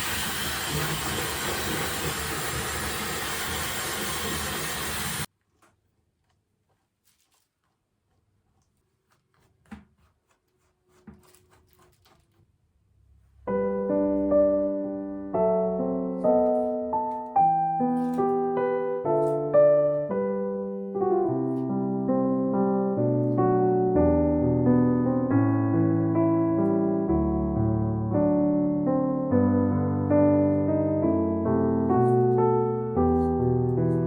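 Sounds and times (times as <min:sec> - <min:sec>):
background piano music: 0:13.4 - 0:34.0.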